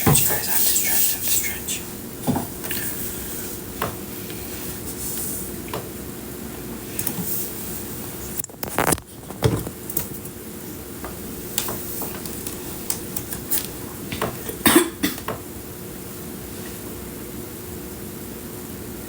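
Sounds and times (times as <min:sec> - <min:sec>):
steady hiss: 0:00.0 - 0:08.4.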